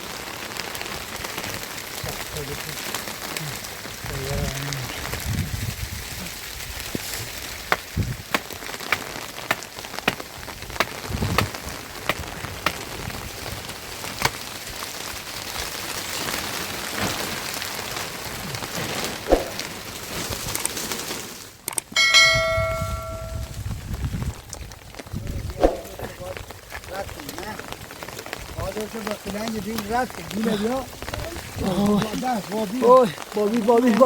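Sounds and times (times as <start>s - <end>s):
steady rain: 0.0s - 34.0s
metallic bell-like ring: 22.0s - 23.5s.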